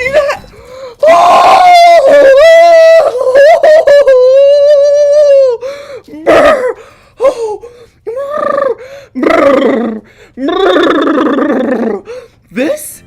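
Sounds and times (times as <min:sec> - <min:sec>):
person gasping: 0:05.6 - 0:08.1, 0:08.8 - 0:09.2, 0:10.0 - 0:10.4, 0:12.0 - 0:12.5.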